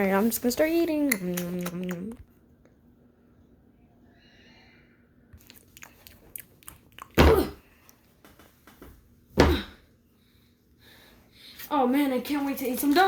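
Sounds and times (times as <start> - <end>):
person coughing: 7.2 - 7.6.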